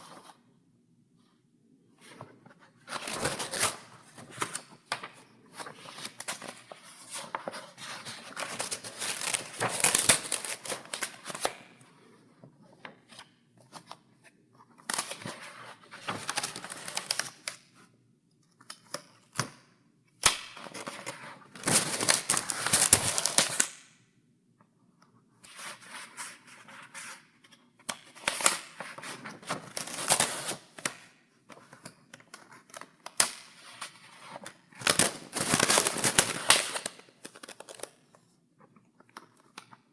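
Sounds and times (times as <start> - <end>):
paper pages rustling: 2.0 - 11.5, 15.0 - 17.5, 20.6 - 23.7, 28.2 - 30.9, 33.8 - 37.9.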